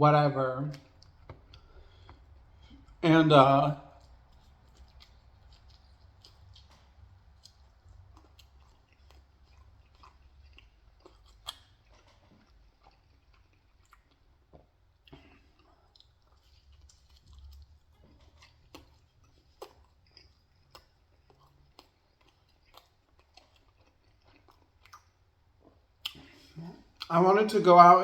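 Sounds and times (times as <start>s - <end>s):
chewing food: 0.7s - 3.0s, 3.7s - 27.1s
wet mouth clicks and smacks: 3.9s - 25.2s, 26.0s - 27.1s.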